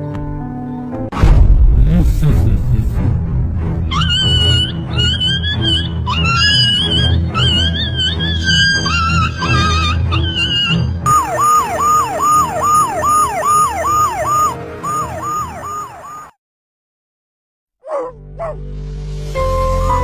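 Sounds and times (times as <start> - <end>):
background music: 0.0 - 16.3, 17.9 - 20.0
siren wailing: 3.9 - 16.4.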